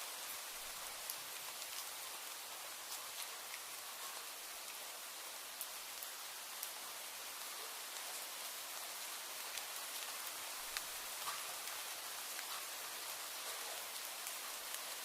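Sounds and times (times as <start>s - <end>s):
rain hissing: 0.0s - 15.0s
raindrop ticks: 2.9s - 4.8s, 9.4s - 14.9s.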